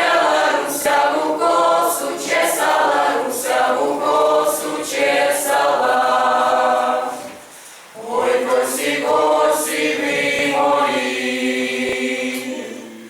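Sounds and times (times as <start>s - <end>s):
group singing in chorus: 0.0s - 13.0s.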